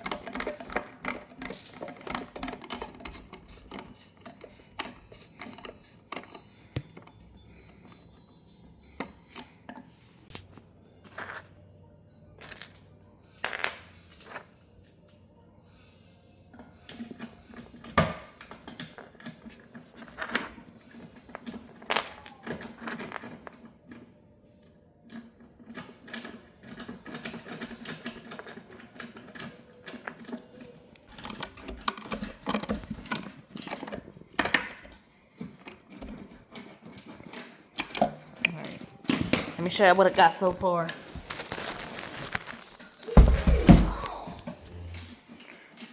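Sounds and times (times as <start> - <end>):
hardware clicks and clinks: 0.0 - 10.6, 25.7 - 34.9.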